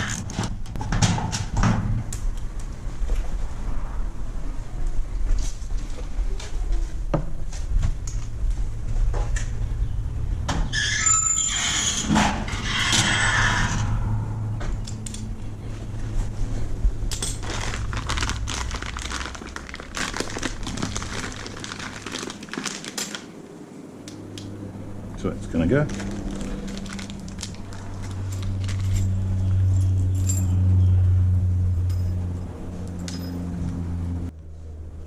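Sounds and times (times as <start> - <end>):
drill bit squealing against metal: 10.7 - 13.8.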